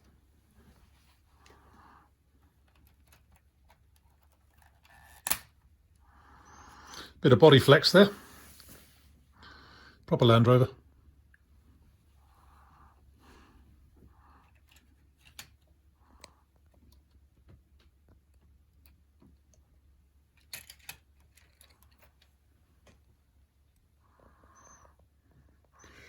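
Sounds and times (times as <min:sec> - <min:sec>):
plastic toy pieces clicking: 0:20.4 - 0:22.2.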